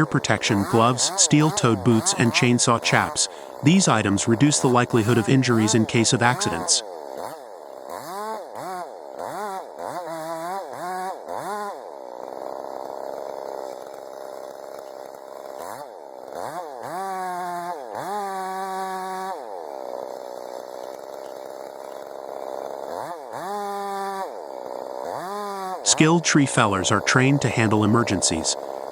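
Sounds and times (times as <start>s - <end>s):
chainsaw engine revving: 0.0s - 28.9s.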